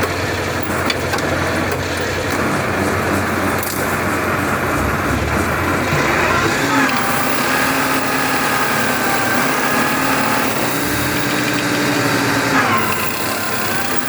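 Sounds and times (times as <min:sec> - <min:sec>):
motor hoe engine running: 0:00.0 - 0:14.0.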